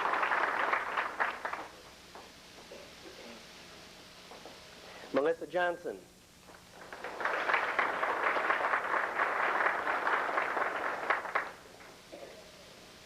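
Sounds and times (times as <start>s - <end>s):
audience applauding: 0.0s - 1.8s, 6.7s - 11.7s.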